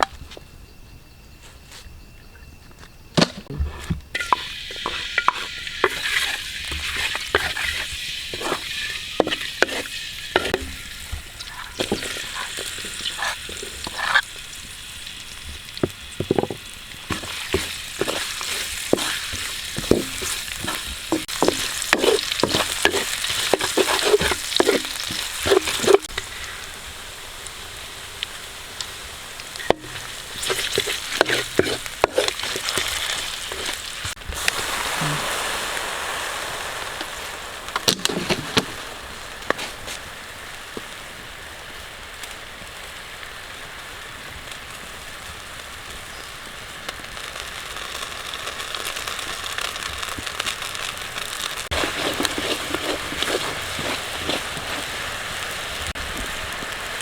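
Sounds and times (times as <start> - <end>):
utensil knocking and scraping pan: 3.2 - 14.2, 15.8 - 26.2, 29.6 - 34.2, 37.8 - 38.8, 51.7 - 55.0
food sizzling in a pan: 4.1 - 57.0.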